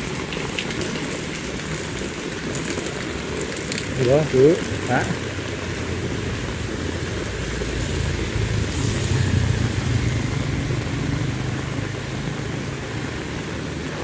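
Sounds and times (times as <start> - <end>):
heavy rain: 0.0 - 14.0
vehicle engine rumbling: 4.0 - 14.0.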